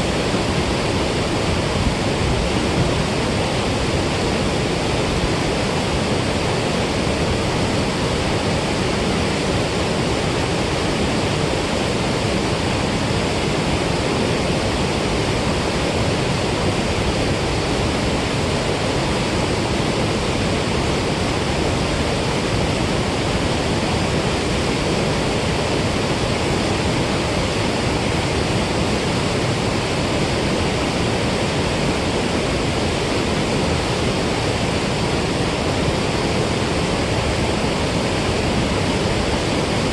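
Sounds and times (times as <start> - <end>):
water rushing over spillway: 0.0 - 39.9.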